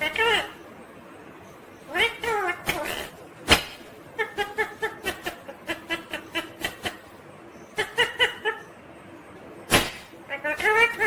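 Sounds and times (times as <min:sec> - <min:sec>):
parrot chattering calls: 0:00.0 - 0:00.6, 0:01.8 - 0:08.8, 0:09.7 - 0:11.0
parrot mimicking laughter: 0:04.1 - 0:08.8, 0:10.2 - 0:11.0.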